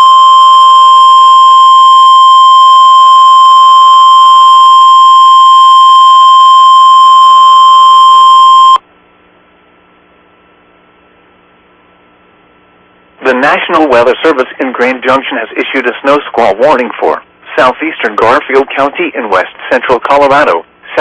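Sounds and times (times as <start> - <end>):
high alert beep tone: 0.0 - 8.8.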